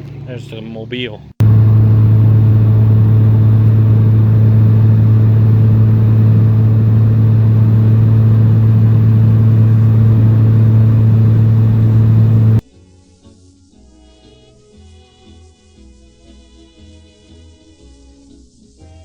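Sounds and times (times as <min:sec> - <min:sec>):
car driving cabin drone: 0:01.4 - 0:12.6.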